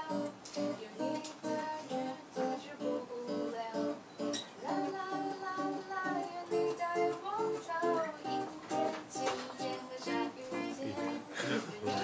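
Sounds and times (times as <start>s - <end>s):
guitar chords: 0.0s - 12.0s.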